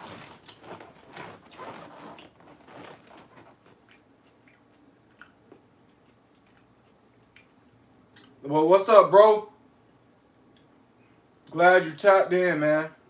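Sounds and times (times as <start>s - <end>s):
chewing crunchy lettuce: 0.0s - 7.5s.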